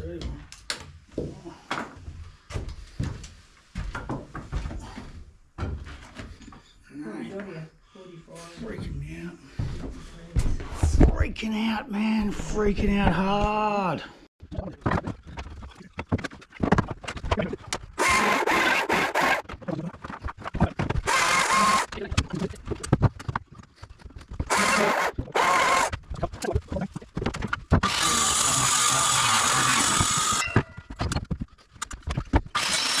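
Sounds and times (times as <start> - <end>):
power tool running: 18.0 - 19.4, 21.1 - 21.9, 24.5 - 25.9, 27.8 - 30.4, 32.5 - 33.0.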